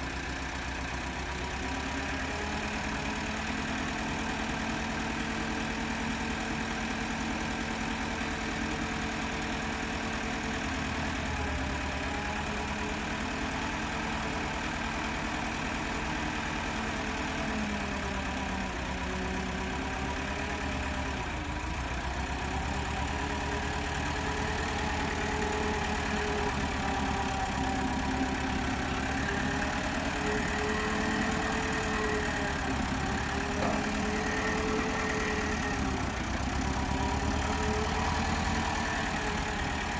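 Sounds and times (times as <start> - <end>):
vehicle engine idling: 0.0 - 39.9.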